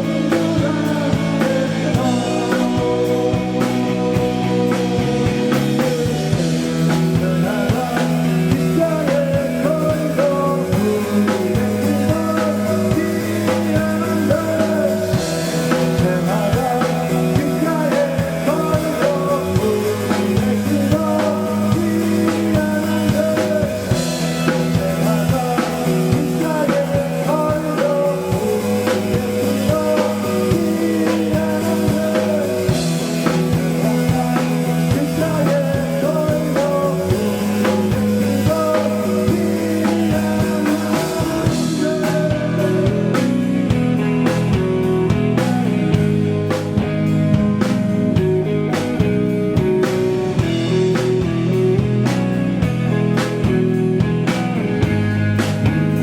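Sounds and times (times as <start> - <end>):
rock band playing live: 0.0 - 56.0.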